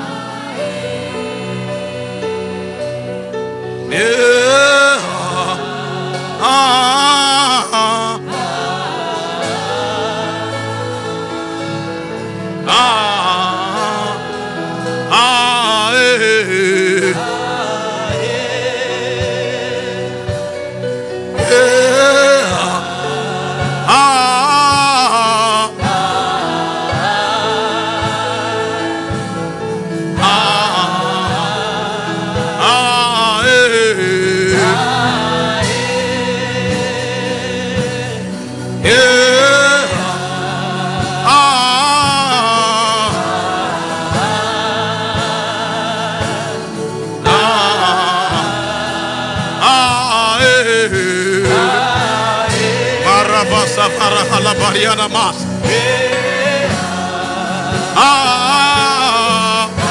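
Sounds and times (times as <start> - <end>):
person singing with vibrato: 0.0 - 59.9
sustained chords: 51.5 - 57.2.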